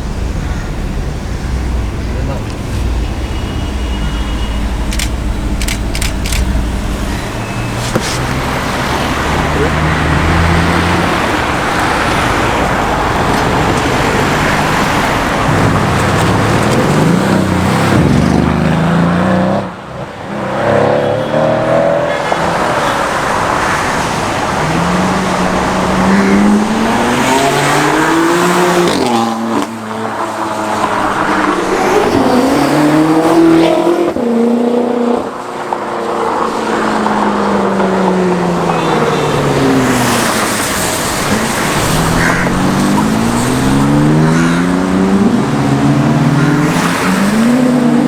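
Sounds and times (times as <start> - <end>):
car engine revving hard: 0.0 - 19.8, 20.4 - 29.9, 37.0 - 48.0.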